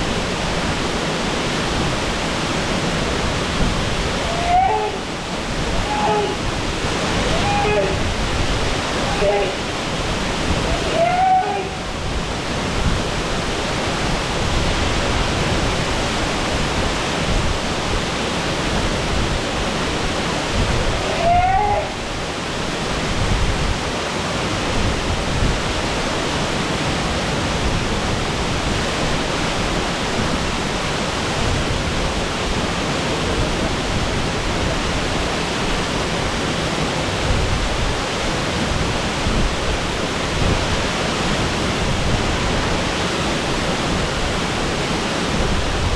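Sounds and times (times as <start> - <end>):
waterfall rushing: 0.0 - 45.9
person's voice: 5.8 - 6.4, 7.2 - 8.1, 9.0 - 9.7, 10.6 - 11.9, 21.0 - 22.0.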